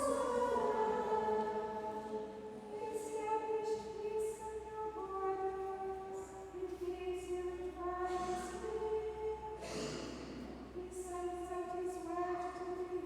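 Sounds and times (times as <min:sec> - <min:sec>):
women singing a chant: 0:00.0 - 0:09.0.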